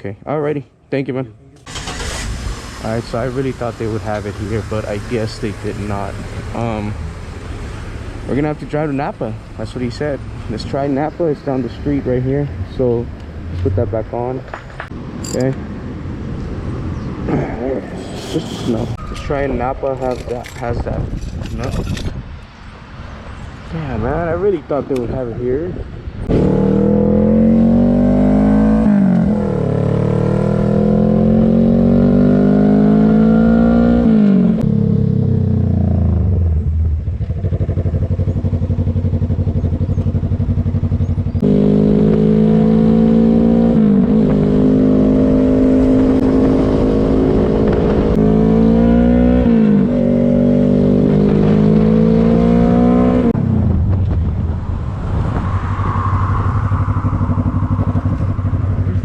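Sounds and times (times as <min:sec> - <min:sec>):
motorcycle engine shifting gears: 0:26.2 - 0:55.7.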